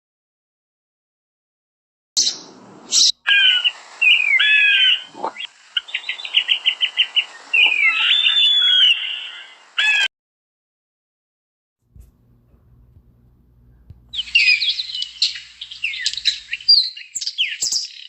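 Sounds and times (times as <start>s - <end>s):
birds singing: 2.2s - 10.1s, 13.7s - 18.0s.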